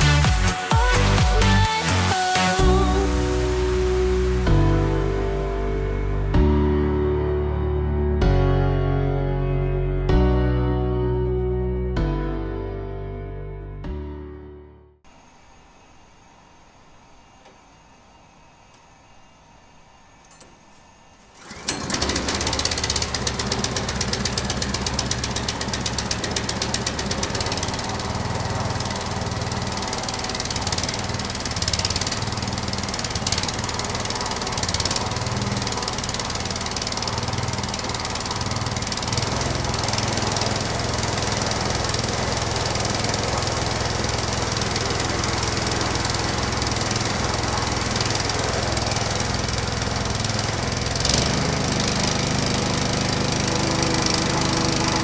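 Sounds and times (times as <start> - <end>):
wood chipper running: 0.0 - 8.8, 21.2 - 55.0
fast rattle: 21.3 - 55.0.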